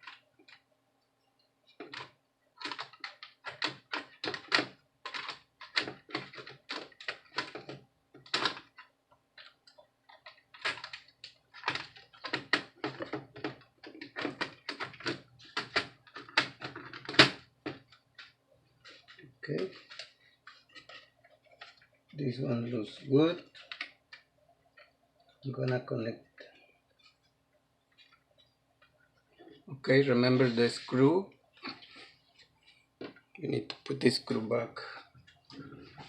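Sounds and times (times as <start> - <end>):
plastic laptop parts clicking: 0.0 - 0.6, 1.7 - 22.1, 23.4 - 27.2.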